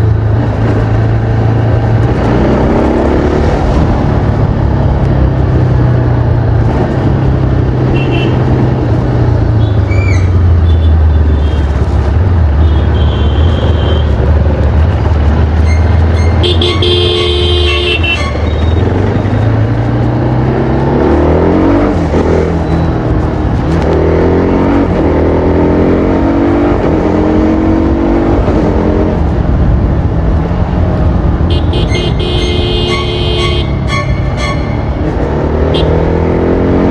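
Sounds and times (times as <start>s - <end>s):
motorcycle engine revving: 0.0s - 36.9s
vehicle horn: 7.9s - 8.5s, 12.6s - 14.2s, 15.6s - 18.8s, 31.5s - 36.0s.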